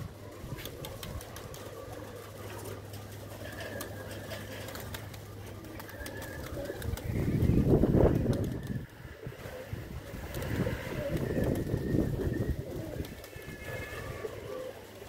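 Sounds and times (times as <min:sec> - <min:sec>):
pigeons cooing: 0:00.0 - 0:15.0.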